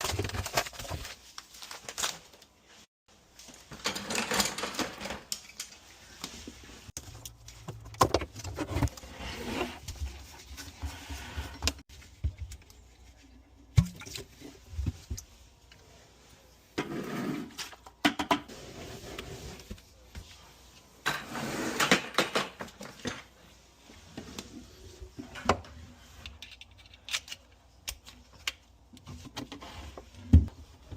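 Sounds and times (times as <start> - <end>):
rustling and scraping: 0.0 - 13.6.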